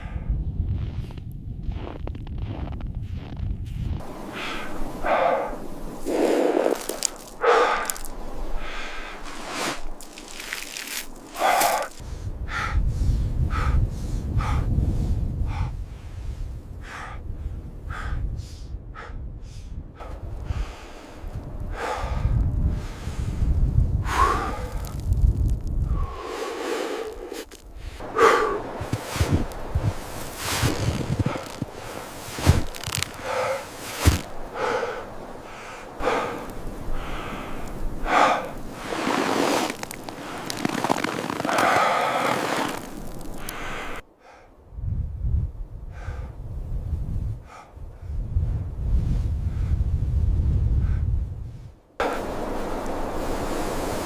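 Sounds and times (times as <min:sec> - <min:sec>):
heavy rasping breathing: 0:04.0 - 0:16.2, 0:16.8 - 0:25.2, 0:25.8 - 0:44.6
sharp thump or crunch: 0:32.4 - 0:34.3.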